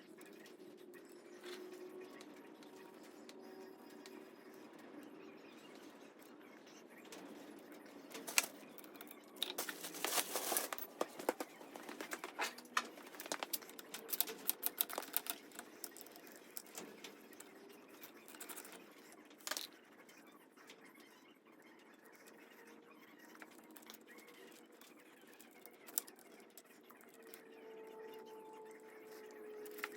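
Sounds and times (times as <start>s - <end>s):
light clicks taps and scraping: 8.1s - 19.7s.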